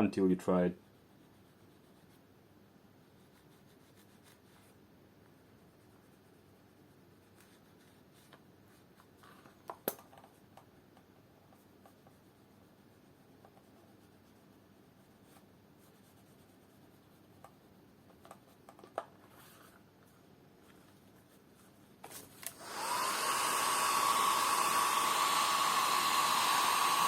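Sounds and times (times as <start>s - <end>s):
soft rubbing and scratching: 0.8s - 2.3s, 3.0s - 4.8s, 5.6s - 9.6s, 11.4s - 22.4s.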